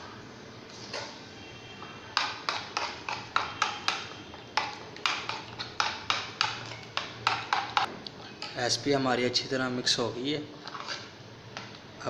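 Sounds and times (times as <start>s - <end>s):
spoon knocking against bowl: 2.2s - 7.9s.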